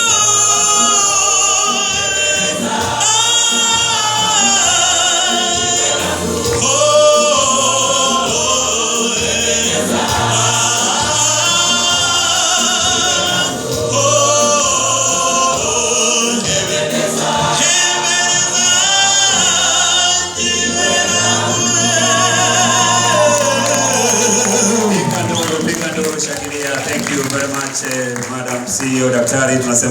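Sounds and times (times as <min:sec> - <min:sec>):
choir singing gospel song: 0:00.0 - 0:29.9.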